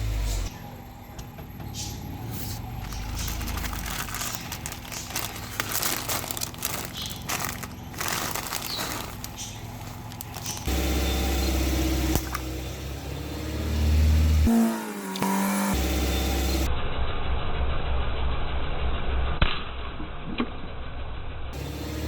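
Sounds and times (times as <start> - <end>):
car engine running: 0.0 - 19.4, 20.8 - 22.0
tyres crunching objects: 2.4 - 10.9.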